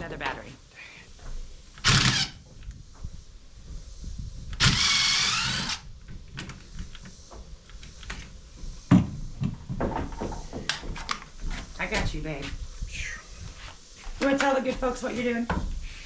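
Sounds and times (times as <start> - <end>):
cordless drill whine: 1.8 - 2.4, 4.6 - 5.9.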